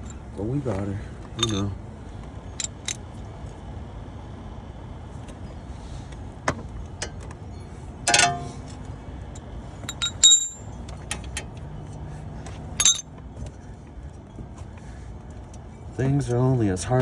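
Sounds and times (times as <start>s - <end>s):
metal tools clinking on metal: 0.0s - 1.8s, 2.5s - 3.0s, 7.0s - 14.2s
low background hum: 0.0s - 17.0s.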